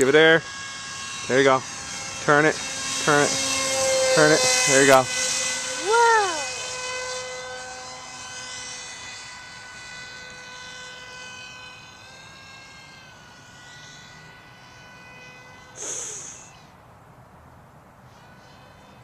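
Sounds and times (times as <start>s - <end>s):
model plane motor whine: 0.0s - 17.0s, 17.8s - 19.0s
loud rushing hiss: 15.8s - 16.5s.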